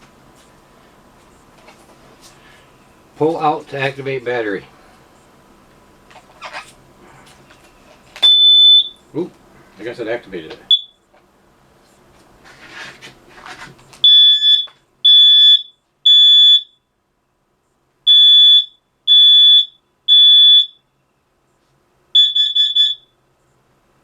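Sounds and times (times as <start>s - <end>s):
short alarm beeps: 8.2s - 9.0s, 10.7s - 11.0s, 14.0s - 16.8s, 18.1s - 20.8s, 22.2s - 23.1s
smoke alarm beeping: 8.2s - 9.1s, 10.7s - 11.0s, 14.0s - 16.8s, 18.1s - 20.8s, 22.1s - 23.2s.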